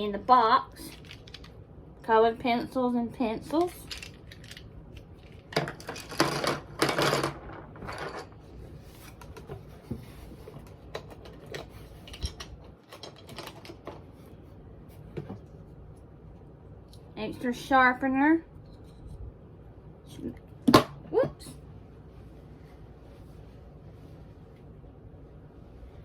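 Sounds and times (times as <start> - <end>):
pencils clattering into a cardboard box: 3.5 - 8.4.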